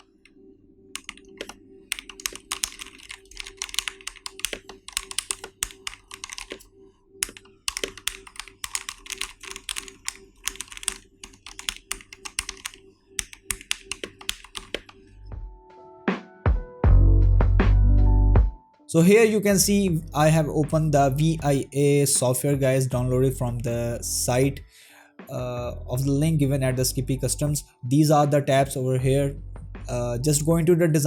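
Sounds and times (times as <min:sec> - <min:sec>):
mechanical keyboard typing: 0:01.0 - 0:15.0.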